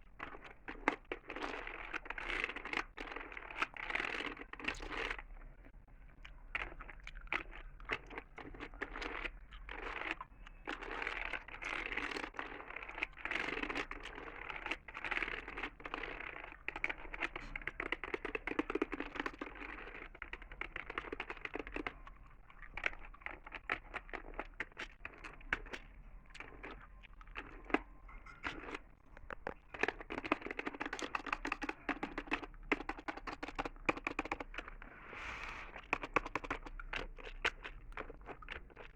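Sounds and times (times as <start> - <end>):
gum chewing with mouth clicks: 0.0 - 38.9
computer keyboard typing: 29.3 - 34.7.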